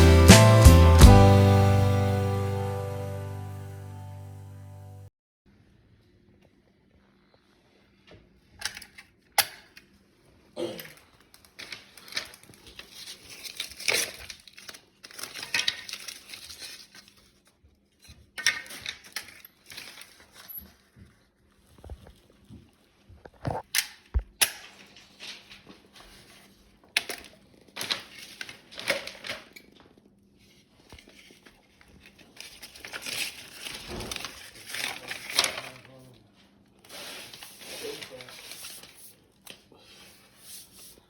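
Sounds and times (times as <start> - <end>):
scraping and crinkling: 11.0 - 23.7, 24.7 - 41.0.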